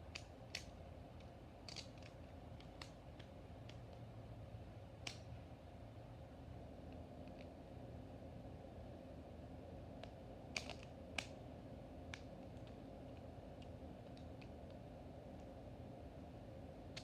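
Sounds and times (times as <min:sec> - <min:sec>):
faint steady hum: 0:00.0 - 0:17.0
plastic toy parts clicking: 0:00.1 - 0:04.0, 0:10.5 - 0:11.3.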